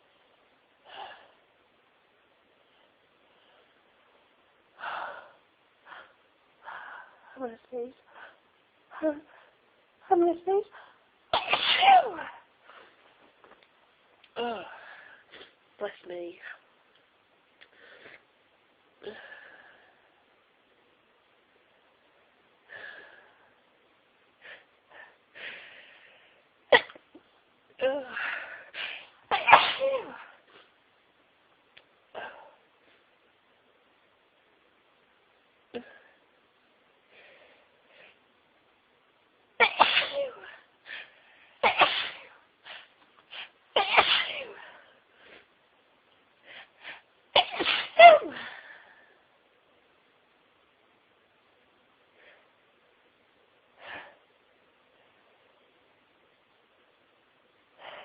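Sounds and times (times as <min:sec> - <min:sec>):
woman sneezing: 0:11.4 - 0:12.4, 0:29.3 - 0:30.3, 0:39.6 - 0:40.6, 0:41.6 - 0:42.3, 0:43.8 - 0:44.8, 0:47.4 - 0:48.6.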